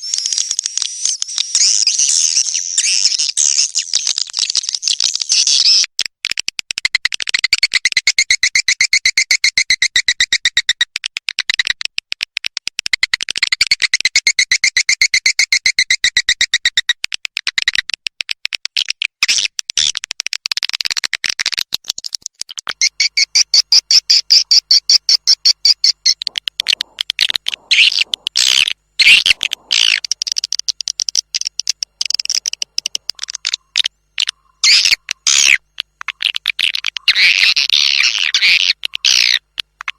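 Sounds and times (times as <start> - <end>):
swiftlet chattering trills: 23.0 - 39.9.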